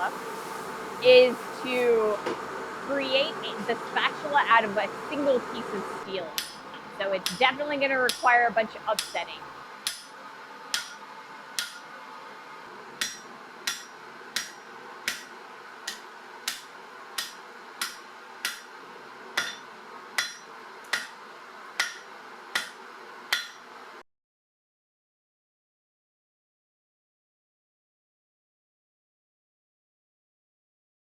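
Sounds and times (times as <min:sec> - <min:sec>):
steady background noise: 0:00.0 - 0:24.0
hammer striking steel on anvil: 0:06.4 - 0:07.5, 0:09.9 - 0:10.1, 0:10.7 - 0:11.0, 0:13.0 - 0:15.3, 0:15.9 - 0:18.7, 0:19.4 - 0:21.2, 0:21.8 - 0:23.6.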